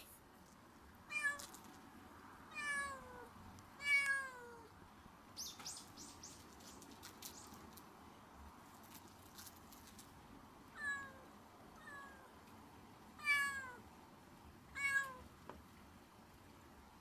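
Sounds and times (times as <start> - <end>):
cat meowing: 1.1 - 1.5, 2.5 - 4.7, 10.8 - 12.3, 13.2 - 13.8, 14.8 - 15.2.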